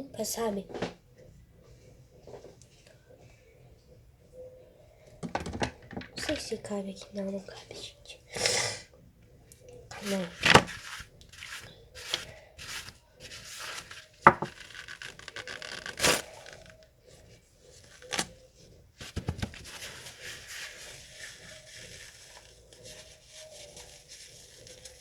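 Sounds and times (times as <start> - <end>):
plastic pot knocking: 5.2 - 6.4, 14.2 - 14.6
paper rubbing and crinkling: 9.9 - 25.0.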